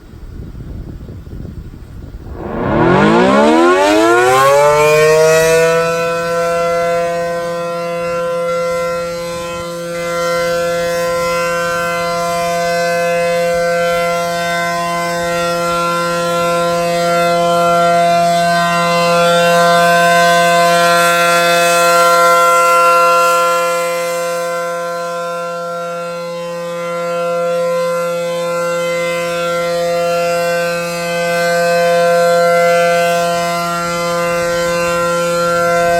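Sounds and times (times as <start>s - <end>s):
warning siren winding up: 2.3s - 6.0s.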